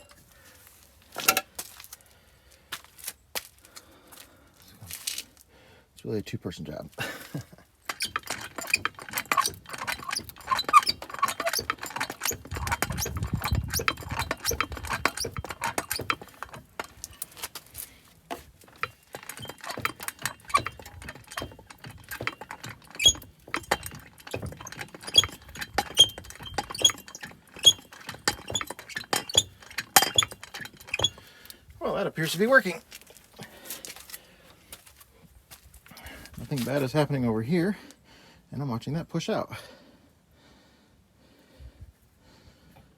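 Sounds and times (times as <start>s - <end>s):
hydraulic pump metallic clicks: 1.2s - 1.5s, 7.9s - 31.6s.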